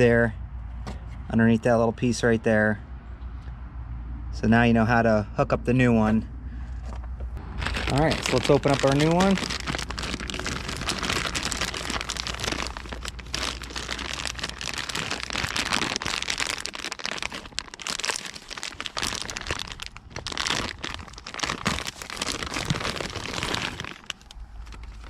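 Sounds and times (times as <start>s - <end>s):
packaging crinkling: 7.4s - 25.0s.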